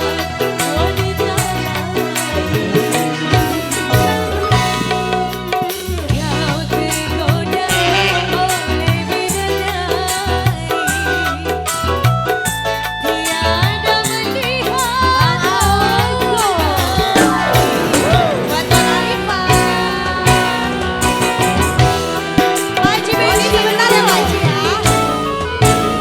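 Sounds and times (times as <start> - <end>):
band music with heavy bass: 0.0 - 26.0
drum beats: 0.0 - 26.0
sliding lead melody: 0.0 - 26.0.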